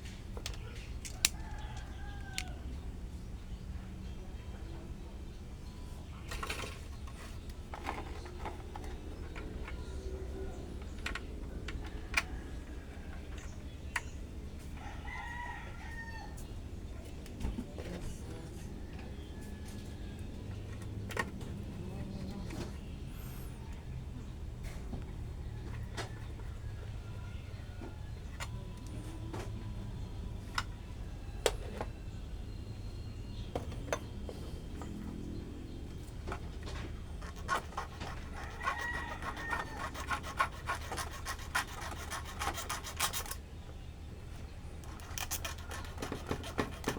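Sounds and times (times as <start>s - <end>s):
rooster crowing: 1.2s - 2.8s, 14.8s - 16.4s, 18.8s - 20.4s, 38.2s - 40.3s.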